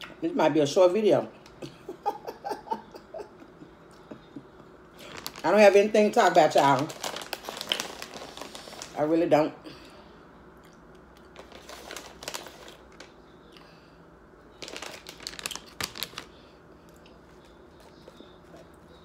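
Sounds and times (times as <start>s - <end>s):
taco shell crunching while eating: 6.8s - 8.9s, 10.6s - 13.6s, 14.5s - 18.8s.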